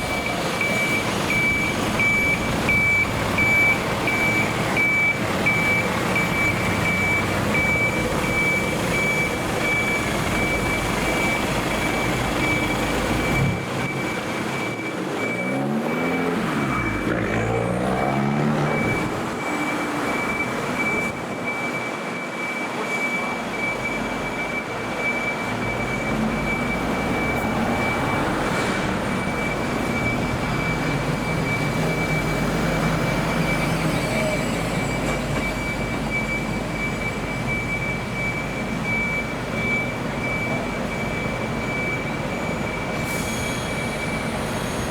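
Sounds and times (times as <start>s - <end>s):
high electronic beeping: 0.0s - 28.5s
heavy truck engine accelerating: 0.0s - 44.9s.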